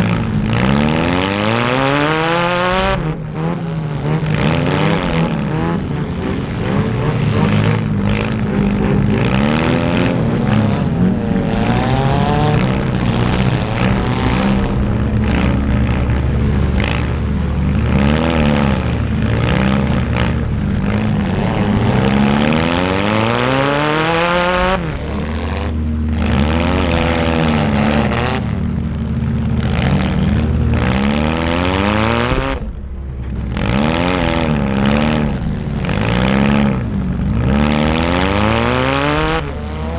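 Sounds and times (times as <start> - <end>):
car engines revving hard: 0.0 - 39.9.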